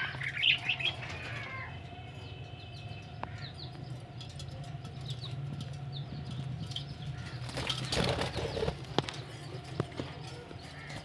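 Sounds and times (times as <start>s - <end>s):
wings flapping: 7.4s - 9.1s.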